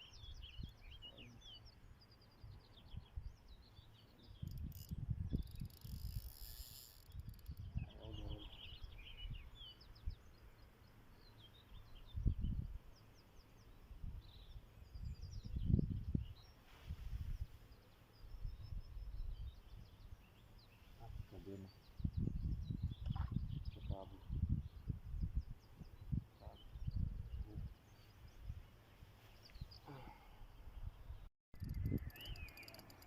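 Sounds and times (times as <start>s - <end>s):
small birds chirping: 0.0s - 33.0s
brief hiss: 16.6s - 17.5s.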